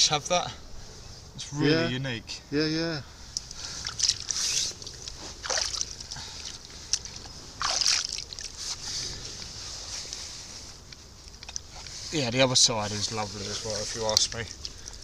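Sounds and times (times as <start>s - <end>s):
water splashing and sloshing: 3.4s - 9.2s, 13.1s - 15.0s.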